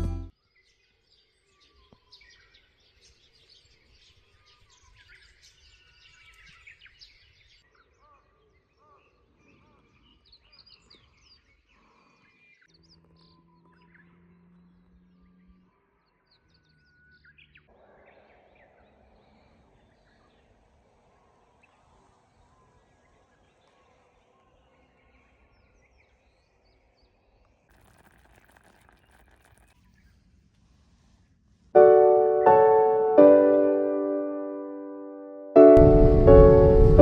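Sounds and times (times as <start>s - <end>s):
piano chords: 0.0s - 0.3s, 31.8s - 37.0s
faint bird chirps: 0.3s - 31.4s.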